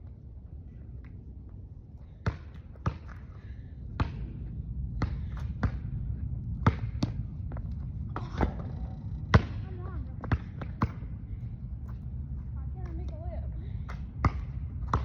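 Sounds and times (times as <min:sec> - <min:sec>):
low background rumble: 0:00.0 - 0:15.0
basketball bouncing on hard surface: 0:02.2 - 0:03.2, 0:04.0 - 0:04.2, 0:05.0 - 0:05.9, 0:06.6 - 0:11.1, 0:13.9 - 0:15.0.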